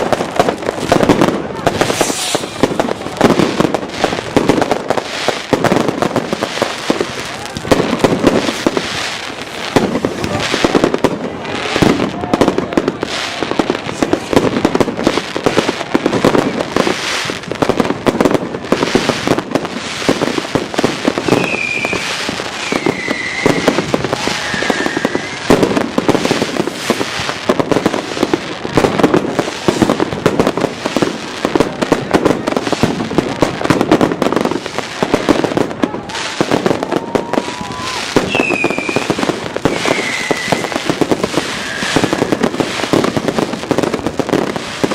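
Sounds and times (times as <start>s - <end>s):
firework bangs and crackling: 0.0s - 44.9s
firework whistles: 0.9s - 4.2s, 18.8s - 28.4s, 34.4s - 44.9s.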